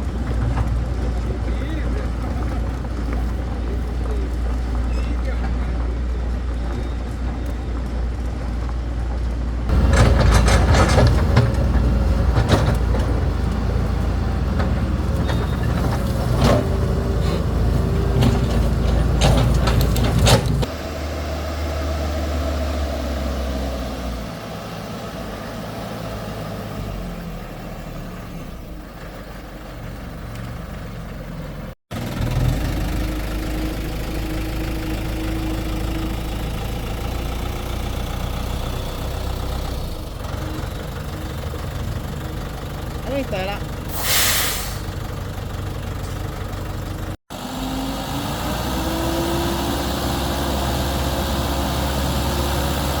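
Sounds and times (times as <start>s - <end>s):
excavator engine running: 0.0s - 53.0s
metallic clanks: 9.7s - 13.6s, 14.5s - 20.7s.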